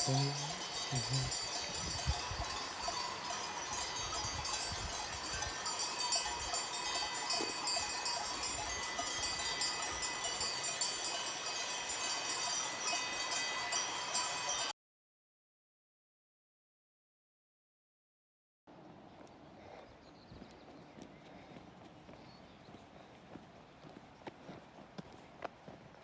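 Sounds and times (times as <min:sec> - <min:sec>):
cowbells jangling: 0:00.0 - 0:14.7.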